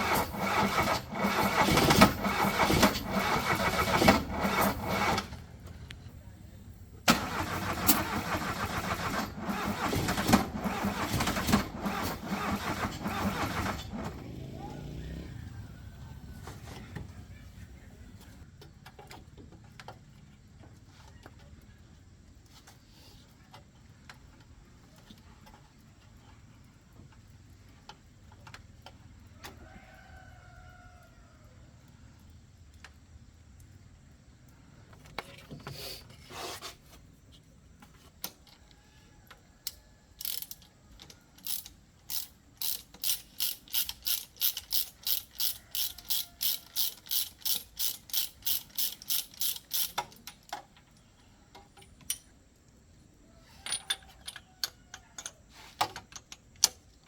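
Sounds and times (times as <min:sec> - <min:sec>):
short scrape: 0:35.7 - 0:37.0
ratchet wrench clicking: 0:39.6 - 0:50.6.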